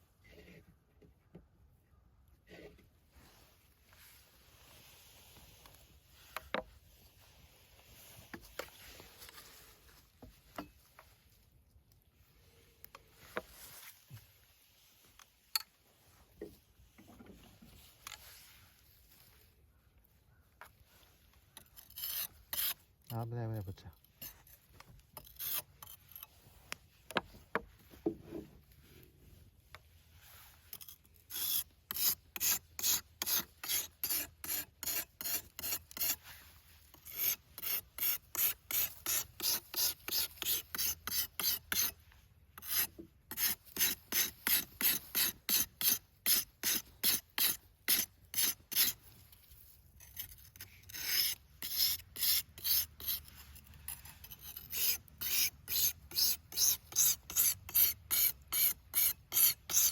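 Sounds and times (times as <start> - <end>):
hatchet blade sharpening strokes: 21.8 - 22.8, 25.2 - 26.3, 30.7 - 36.2, 36.9 - 42.0, 42.6 - 49.0, 50.0 - 59.9.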